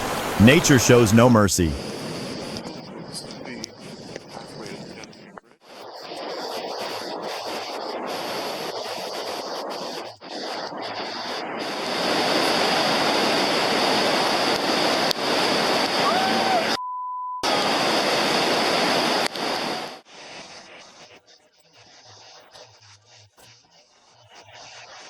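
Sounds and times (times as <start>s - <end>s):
floodwater rushing: 0.0s - 1.8s
short steady beep: 16.8s - 17.4s.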